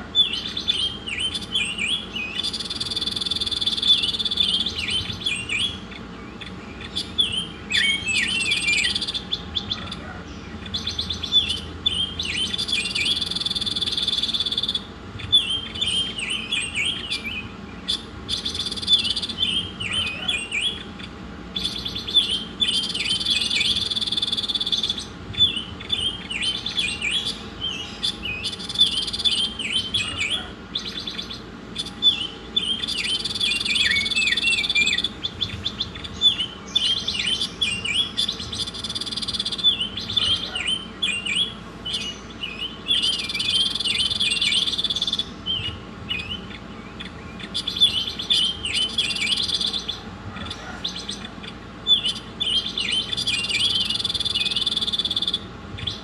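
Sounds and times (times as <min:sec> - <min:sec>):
bird buzzing trill: 0:00.0 - 0:09.9, 0:10.7 - 0:49.9
songbird chirping and twittering: 0:00.0 - 0:56.0.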